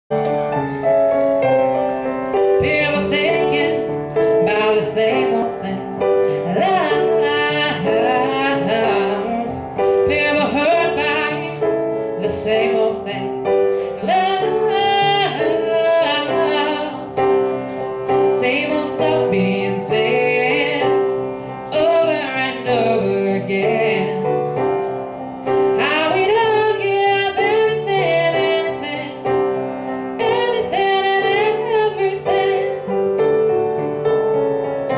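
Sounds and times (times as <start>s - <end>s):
piano chords: 0.1s - 34.9s
woman singing: 2.5s - 17.2s, 18.1s - 24.5s, 25.8s - 29.4s, 30.2s - 33.0s.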